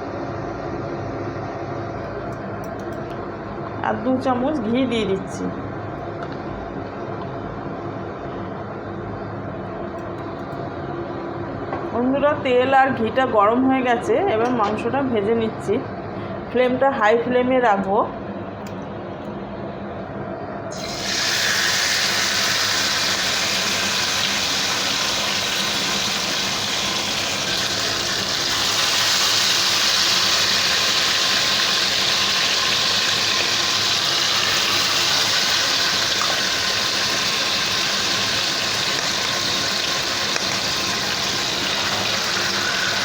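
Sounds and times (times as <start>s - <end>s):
chicken sizzling in hot oil: 20.7s - 43.0s.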